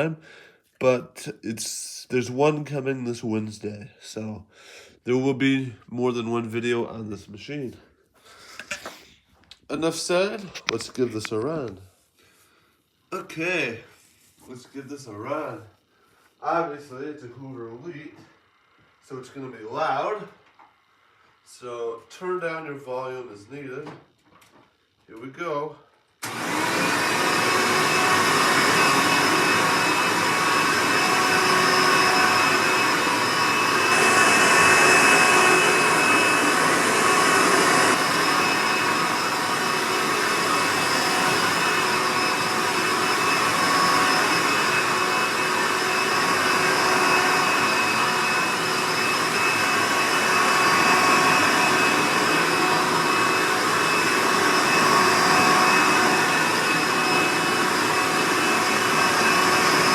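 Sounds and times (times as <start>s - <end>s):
vacuum cleaner motor whining: 9.8s - 11.7s, 26.2s - 59.9s.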